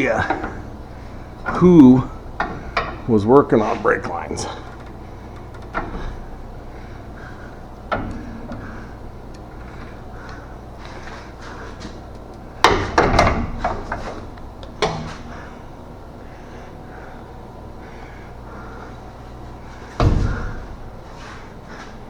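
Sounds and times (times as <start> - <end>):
tools knocking on metal parts: 0.0 - 6.5, 12.6 - 15.6
steady low hum: 0.0 - 22.0.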